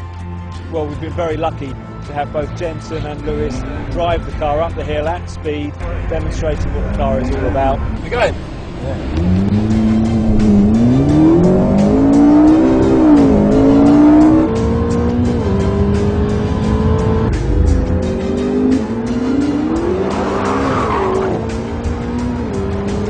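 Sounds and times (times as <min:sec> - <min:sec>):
car engine accelerating through gears: 0:06.0 - 0:23.0.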